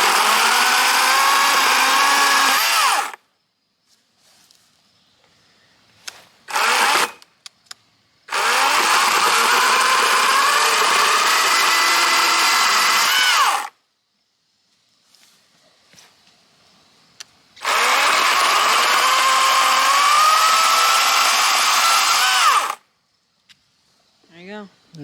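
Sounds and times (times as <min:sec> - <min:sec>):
battery chainsaw motor whine: 0:00.0 - 0:03.2, 0:06.5 - 0:07.2, 0:08.3 - 0:13.8, 0:17.6 - 0:22.8.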